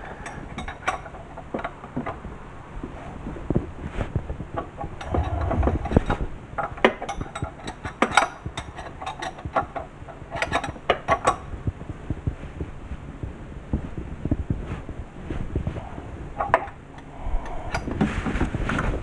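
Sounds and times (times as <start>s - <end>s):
low rumble: 4.7s - 6.8s, 15.8s - 18.6s.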